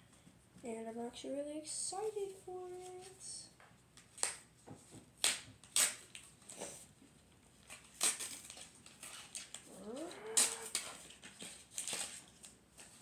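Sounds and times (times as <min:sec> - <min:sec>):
package wrapping crinkling: 0:07.5 - 0:13.0.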